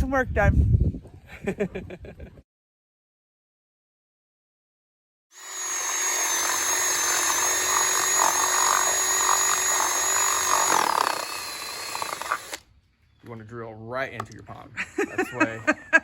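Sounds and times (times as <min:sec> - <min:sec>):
power drill whining: 0:05.3 - 0:12.7.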